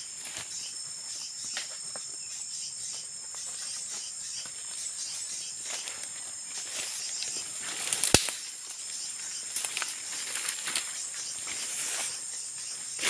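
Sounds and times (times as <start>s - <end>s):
insect drone: 0.0s - 13.0s
footsteps on dry leaves: 4.0s - 13.0s
sharp snap: 8.0s - 8.4s.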